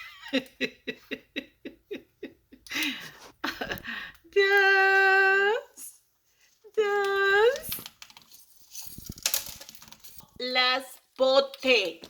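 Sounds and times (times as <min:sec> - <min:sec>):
breathy sounds: 0:02.7 - 0:04.3.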